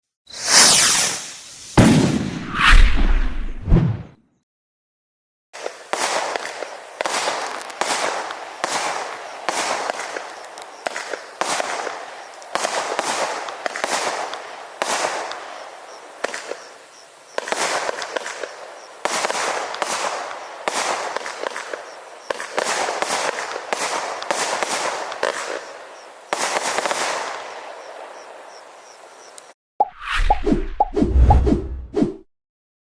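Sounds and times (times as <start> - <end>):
firework barrage bangs: 0.5 - 2.6.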